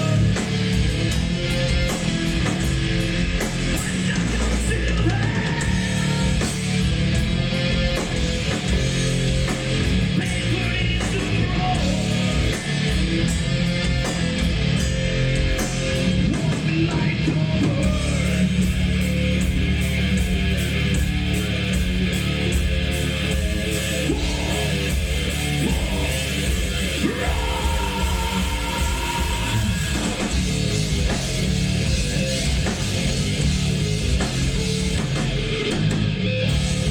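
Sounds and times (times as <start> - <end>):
distorted electric guitars: 0.0 - 36.9
drums: 0.0 - 36.9
heavy metal song: 0.0 - 36.9
person shouting vocals: 27.0 - 29.9.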